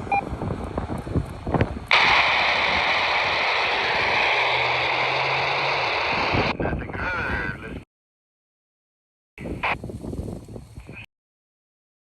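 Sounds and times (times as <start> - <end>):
wind buffeting microphone: 0.0 - 7.8, 9.4 - 11.0
radio static hiss: 1.9 - 7.8, 9.4 - 9.8, 10.8 - 11.1.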